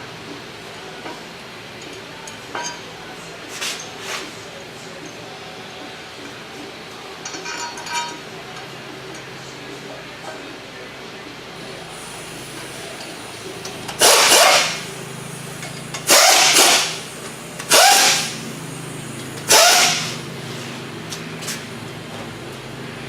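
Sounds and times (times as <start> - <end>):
impact wrench bursts: 13.9 - 14.9, 15.6 - 18.4, 19.4 - 20.2.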